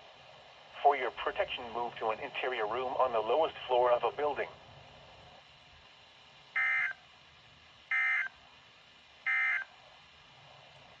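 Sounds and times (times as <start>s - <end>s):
digital data tone bursts: 6.6s - 7.0s, 7.9s - 8.3s, 9.3s - 9.7s.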